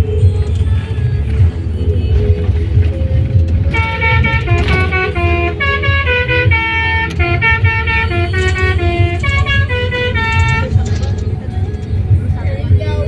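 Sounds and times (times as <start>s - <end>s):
steady low rumble: 0.0s - 13.0s
multi-tone bus air horn melody: 3.6s - 11.3s.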